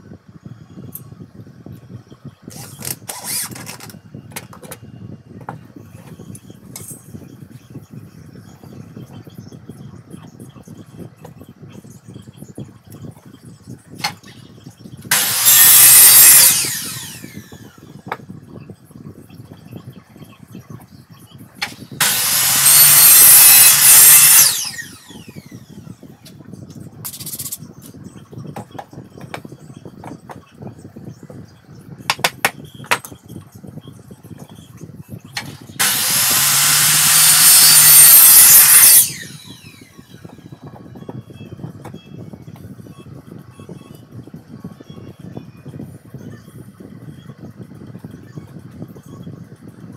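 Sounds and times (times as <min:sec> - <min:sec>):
low motor hum: 0:00.4 - 0:21.0
grinding machine spinning: 0:02.5 - 0:04.9, 0:15.0 - 0:18.2, 0:21.6 - 0:26.0, 0:35.4 - 0:41.3.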